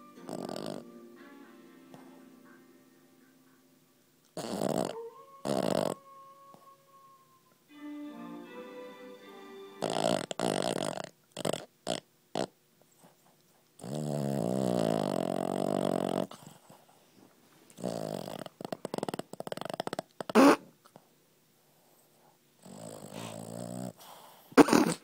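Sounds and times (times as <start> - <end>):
dog snoring: 0.0 - 0.9, 4.4 - 6.6, 9.8 - 12.6, 13.8 - 16.8, 17.8 - 20.6, 22.6 - 25.0
dog snorting: 0.3 - 0.8, 4.4 - 6.0, 9.8 - 13.1, 13.8 - 16.9, 17.8 - 20.6, 22.6 - 25.0.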